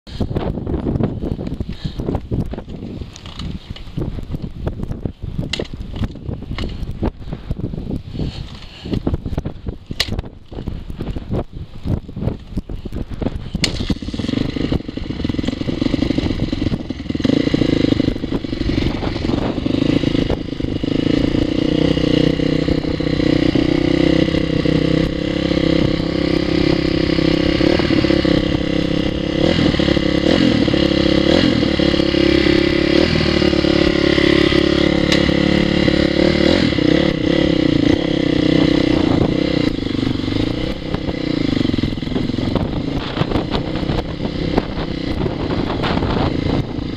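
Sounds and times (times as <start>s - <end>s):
motorcycle engine revving: 13.4s - 46.9s.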